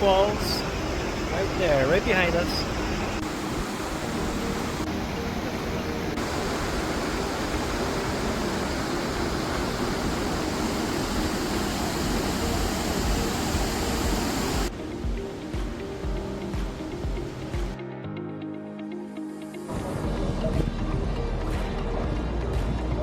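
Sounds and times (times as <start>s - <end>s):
waterfall rushing: 0.0s - 17.8s.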